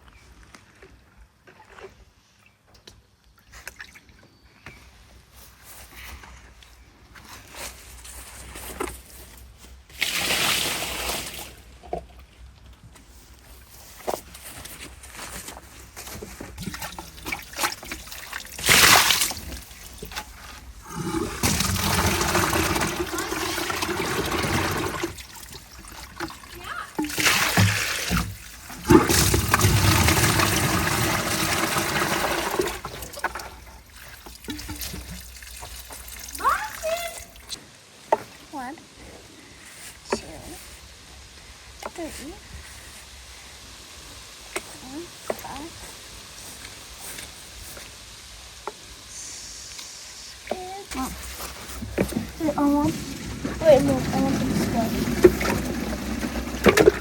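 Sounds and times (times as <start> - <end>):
water sloshing and splashing: 16.0 - 37.6, 50.6 - 57.0
rush of water: 16.6 - 37.6.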